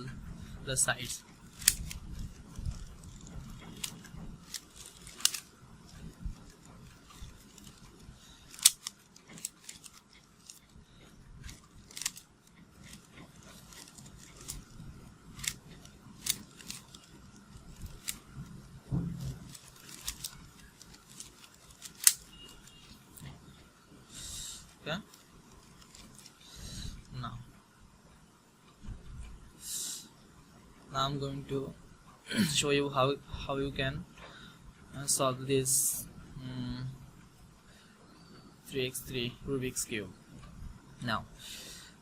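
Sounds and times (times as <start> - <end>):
puzzle cube plastic clicks: 1.5 - 10.6, 11.4 - 14.8, 15.4 - 18.3, 19.2 - 22.8.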